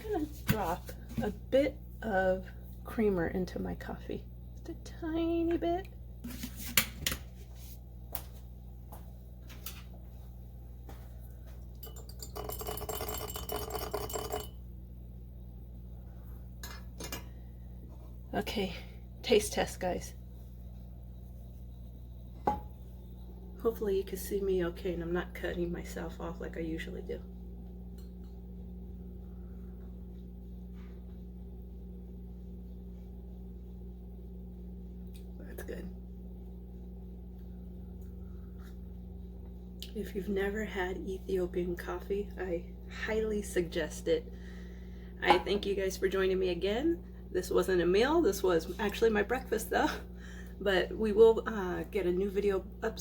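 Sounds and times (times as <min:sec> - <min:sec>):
low hum: 0:07.2 - 0:53.0
spoon clinking in a glass: 0:11.8 - 0:14.6.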